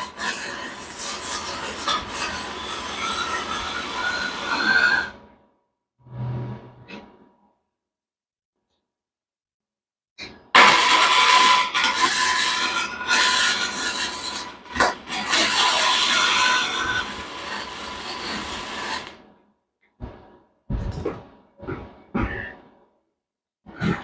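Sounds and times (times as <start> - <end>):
welding arc hissing: 15.1 - 19.2.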